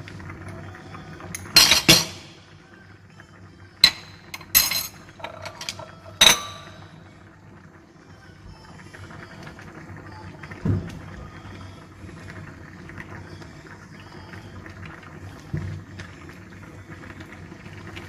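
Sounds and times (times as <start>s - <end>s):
utensil clinking against cookware: 1.3s - 2.3s, 3.8s - 6.9s.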